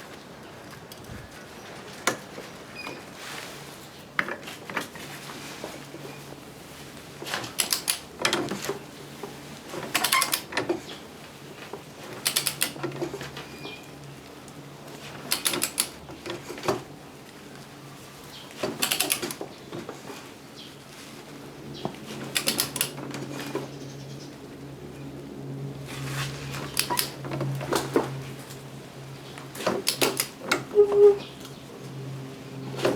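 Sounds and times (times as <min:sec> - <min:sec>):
sharp metallic clicking: 0:12.2 - 0:12.8, 0:22.3 - 0:23.0.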